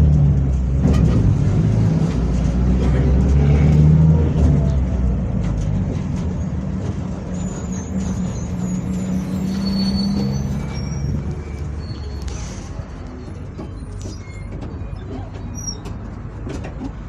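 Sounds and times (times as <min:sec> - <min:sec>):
bus engine running: 0:00.0 - 0:17.0
faint high squeals: 0:07.3 - 0:16.0.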